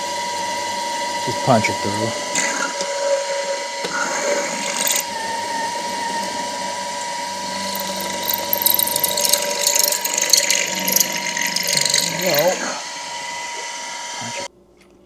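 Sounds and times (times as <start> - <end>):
drill bit cutting metal: 0.0 - 14.5
drill motor whine: 0.0 - 14.5.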